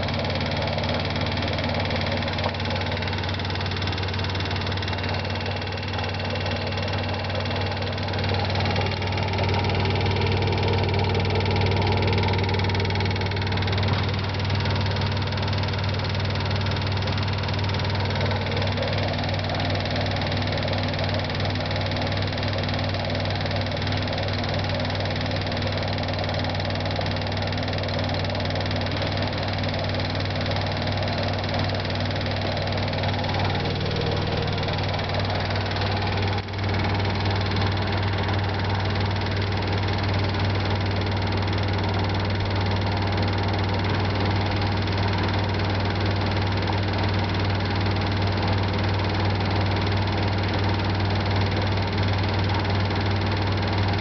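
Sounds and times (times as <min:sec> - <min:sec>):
washing machine spinning: 0:00.0 - 0:54.0.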